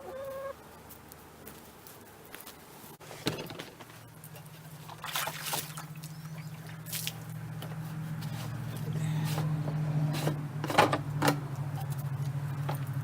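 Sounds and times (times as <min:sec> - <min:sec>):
engine humming steadily: 0:03.5 - 0:13.0.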